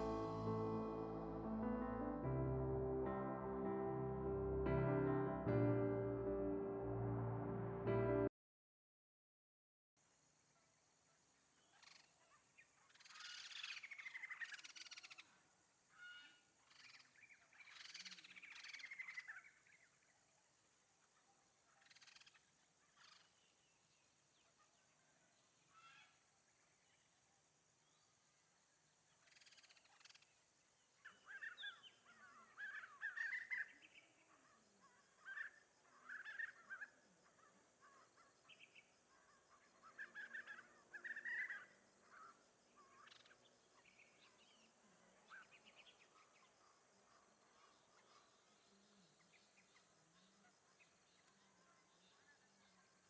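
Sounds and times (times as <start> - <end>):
birds chirping: 0.0 - 7.0
faint high hiss: 0.0 - 7.9.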